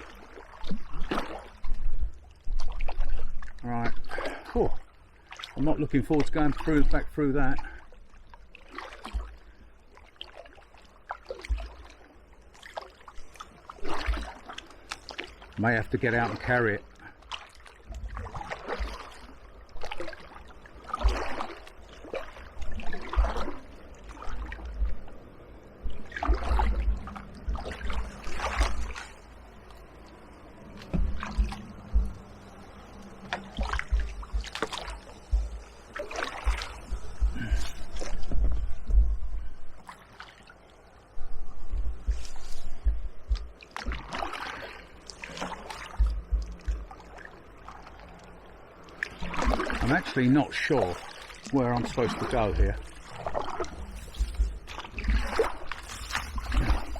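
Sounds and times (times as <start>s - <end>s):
paddle splashing through water: 0.0s - 56.9s
low knocks: 30.8s - 32.4s, 33.2s - 39.7s.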